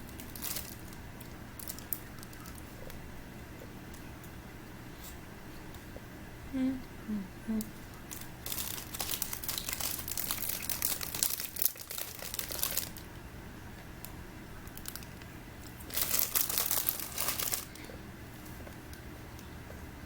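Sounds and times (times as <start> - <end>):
plastic wrapper crinkling: 0.0 - 3.0, 7.9 - 13.2, 14.0 - 18.6.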